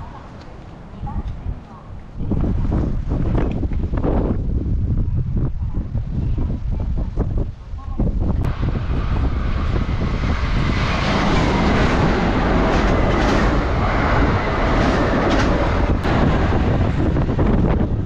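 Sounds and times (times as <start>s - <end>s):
gusty wind on microphone: 1.0s - 18.0s
train running past on rails: 8.4s - 18.0s.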